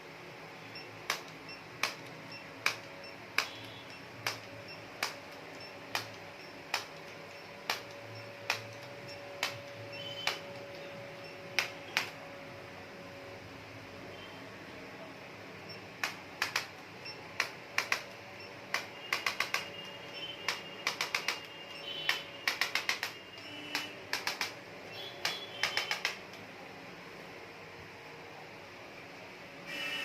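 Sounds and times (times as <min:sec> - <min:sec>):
room tone hiss: 0:00.0 - 0:30.0
sharp click: 0:01.1 - 0:10.9, 0:16.0 - 0:16.8, 0:17.4 - 0:24.6, 0:25.2 - 0:26.4.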